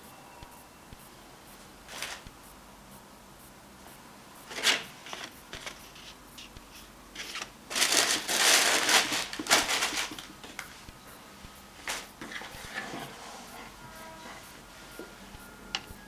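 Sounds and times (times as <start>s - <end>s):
paper rustling and scraping: 1.9s - 2.3s, 4.5s - 10.7s, 11.8s - 14.5s.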